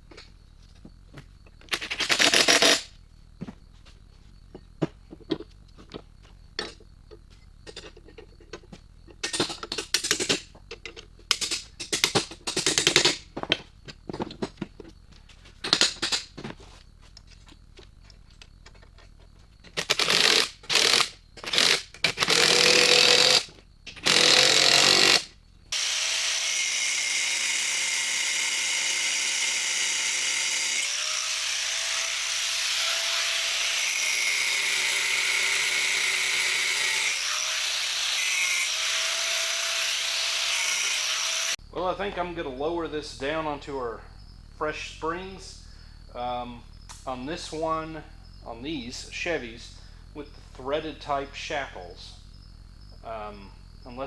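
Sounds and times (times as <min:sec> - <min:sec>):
power tool whining: 0:01.7 - 0:02.9, 0:19.7 - 0:41.6.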